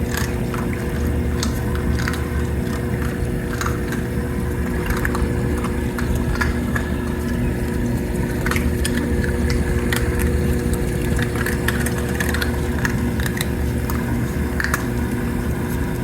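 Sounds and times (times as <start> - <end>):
washing machine running: 0.0 - 16.0.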